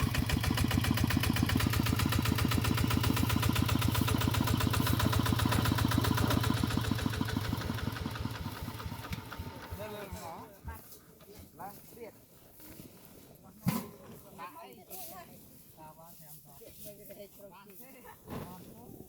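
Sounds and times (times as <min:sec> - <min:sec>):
small engine running: 0:00.0 - 0:10.4.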